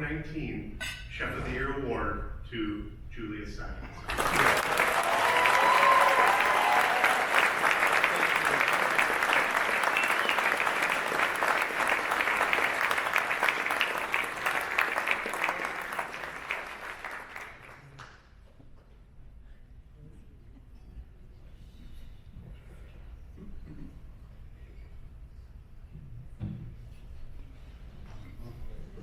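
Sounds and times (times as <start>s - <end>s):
audience applauding: 4.0s - 18.2s.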